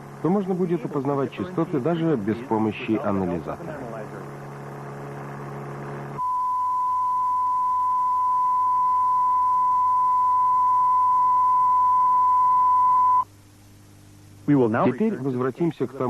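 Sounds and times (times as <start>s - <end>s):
steady electronic test tone: 0.0s - 13.3s.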